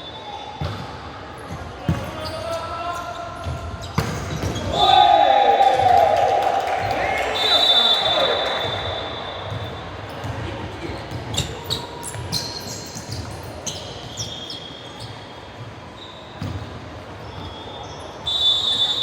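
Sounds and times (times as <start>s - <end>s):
sneakers squeaking on floor: 0.0s - 4.8s, 7.4s - 19.0s
basketball bouncing on hard court: 16.4s - 16.7s.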